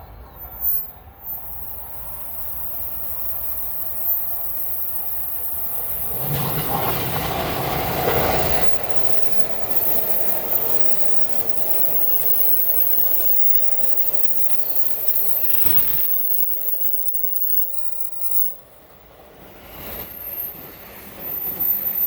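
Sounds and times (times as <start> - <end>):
electric train passing: 0.0 - 22.0
wheels clicking over rail joints: 0.0 - 22.0.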